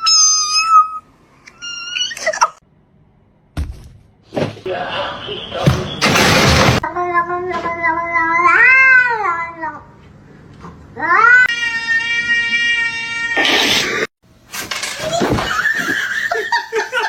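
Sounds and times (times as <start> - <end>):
cat meowing: 0.0 - 1.0, 11.1 - 13.6.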